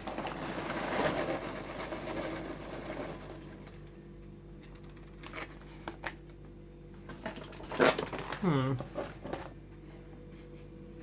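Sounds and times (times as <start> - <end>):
popcorn crackling: 0.0 - 3.9, 7.3 - 9.2.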